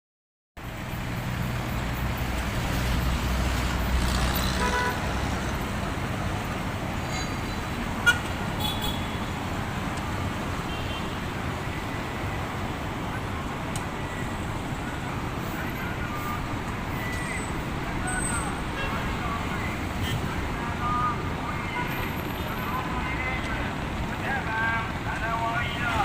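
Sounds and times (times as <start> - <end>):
steady traffic noise: 0.6 - 26.0
car horn toot: 4.6 - 5.0, 8.0 - 9.3, 10.7 - 11.2.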